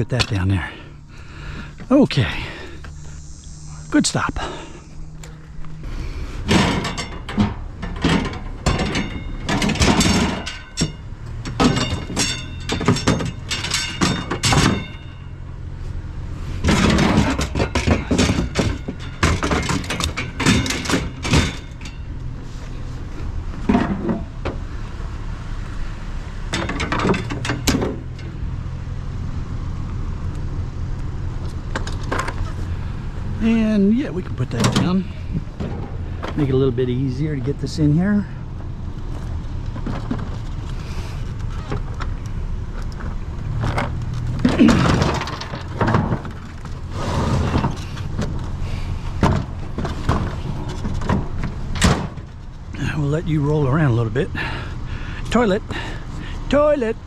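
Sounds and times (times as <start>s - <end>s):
steady low hum: 0.0s - 57.0s
scrap knocking and clanking: 6.4s - 15.2s, 16.6s - 24.7s, 26.5s - 28.4s, 34.2s - 36.6s, 38.2s - 42.2s, 42.9s - 52.6s.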